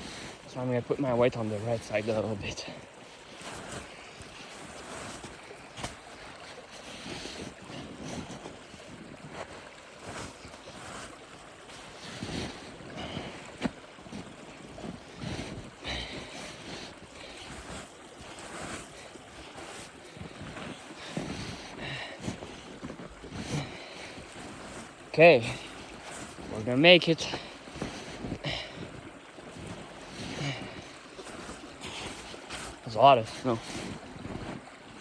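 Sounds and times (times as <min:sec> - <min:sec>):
snow crunching: 0:00.0 - 0:35.0.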